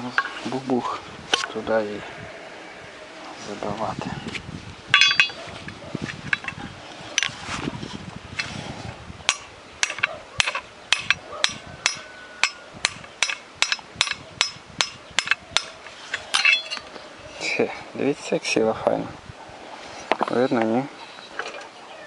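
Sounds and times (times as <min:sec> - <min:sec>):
hammer blows on metal: 0:09.3 - 0:16.9.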